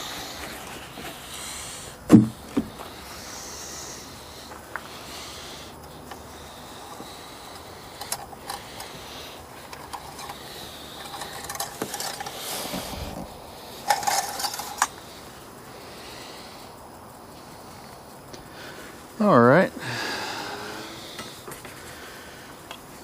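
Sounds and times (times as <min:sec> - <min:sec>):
metal tools clinking: 0:09.6 - 0:12.8, 0:13.8 - 0:15.0.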